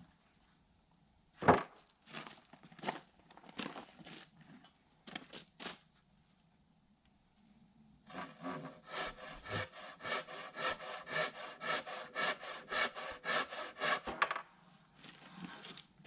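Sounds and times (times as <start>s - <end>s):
hand saw cutting wood: 8.1s - 14.2s.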